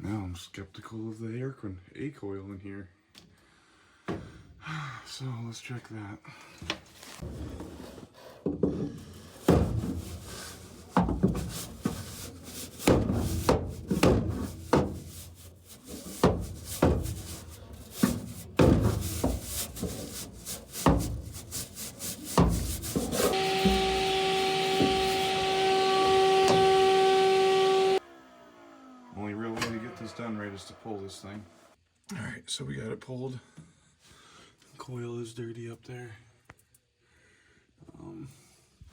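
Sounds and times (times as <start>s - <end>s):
metal panels knocking and scraping: 7.2s - 26.9s
motor whine with hiss: 23.0s - 31.8s.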